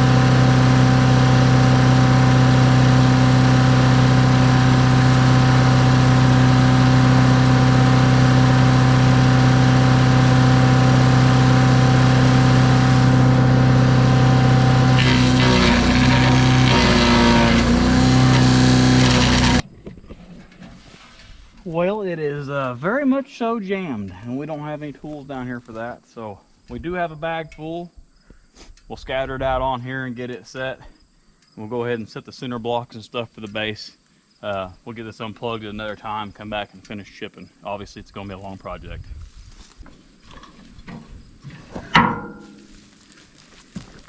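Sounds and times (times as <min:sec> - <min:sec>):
wood chipper engine running: 0:00.0 - 0:19.6.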